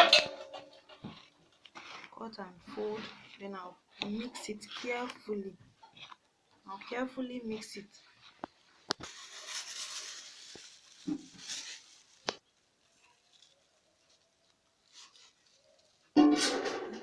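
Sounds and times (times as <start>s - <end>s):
spoon stirring thick batter: 0.7s - 9.1s.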